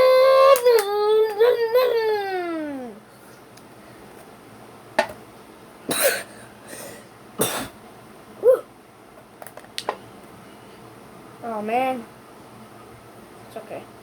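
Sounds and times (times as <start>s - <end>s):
harsh throat coughing bursts: 5.9s - 6.4s, 7.4s - 7.8s.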